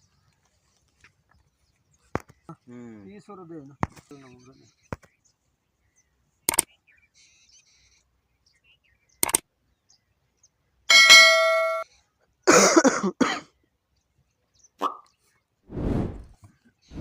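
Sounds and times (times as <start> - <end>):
metal part clanging: 10.9 - 11.8.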